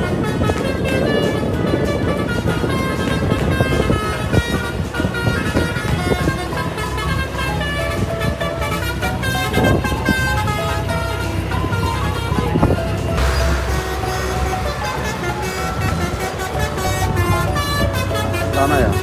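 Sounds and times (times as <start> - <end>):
multi-tone bus horn toots: 0.0 - 19.0
vehicle engine running: 13.2 - 19.0.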